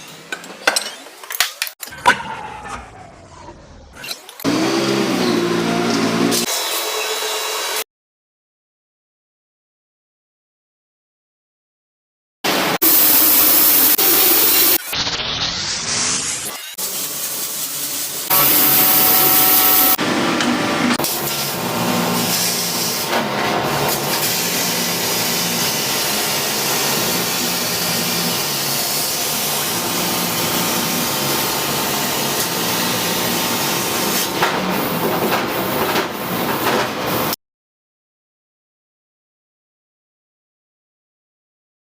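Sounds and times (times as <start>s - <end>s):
power tools working metal: 4.0s - 7.8s, 16.3s - 35.8s.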